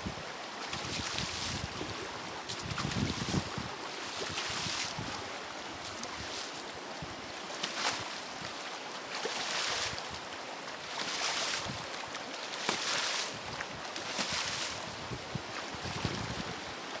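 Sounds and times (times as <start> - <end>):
wind buffeting microphone: 0.0 - 5.3, 14.8 - 16.8
river water rushing and splashing: 0.0 - 17.0.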